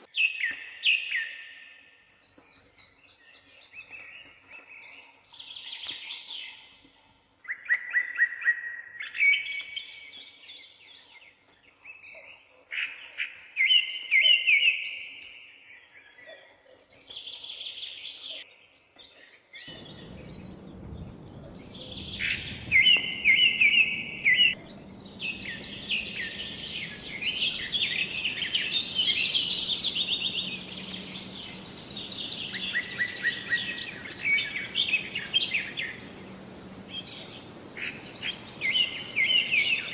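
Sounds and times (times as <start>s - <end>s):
songbird singing: 13.3s - 39.9s
steady rushing noise with hum: 19.7s - 39.9s.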